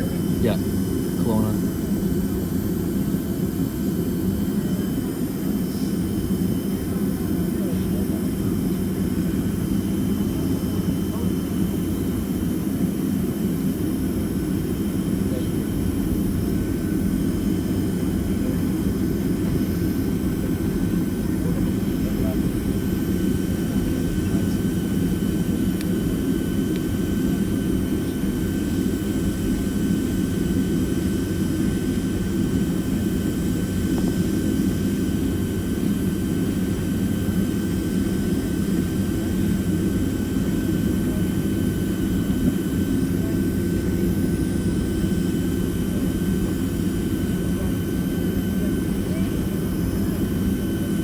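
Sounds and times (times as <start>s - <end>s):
airliner cabin rumble: 14.2s - 50.9s.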